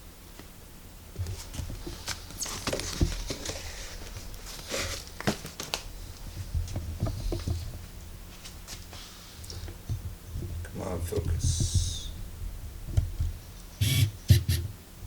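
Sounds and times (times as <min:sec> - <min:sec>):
packaging rustling: 0:01.4 - 0:05.9.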